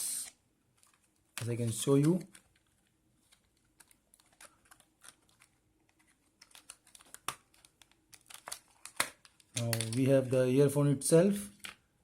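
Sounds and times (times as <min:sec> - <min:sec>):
packaging clicks and rustles: 0:00.7 - 0:10.2.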